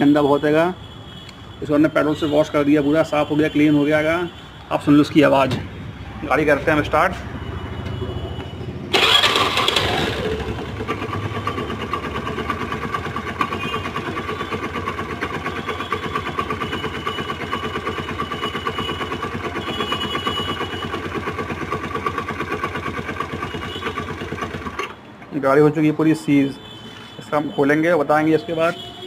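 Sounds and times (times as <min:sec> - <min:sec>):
scooter engine starting and rattling: 0:08.9 - 0:25.0.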